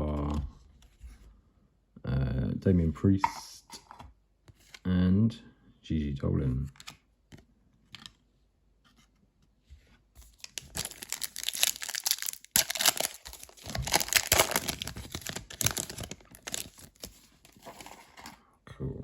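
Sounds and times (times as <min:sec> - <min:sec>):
wrapper tearing and crinkling: 0:10.2 - 0:17.8.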